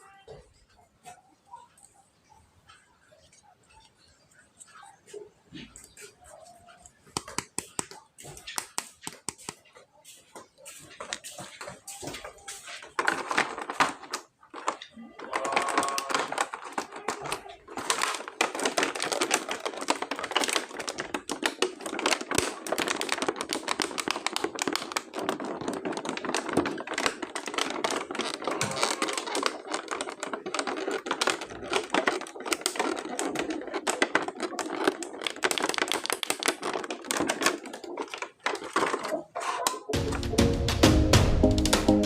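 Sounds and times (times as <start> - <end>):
hard plastic clattering: 10.9 - 40.5
music: 40.0 - 42.0.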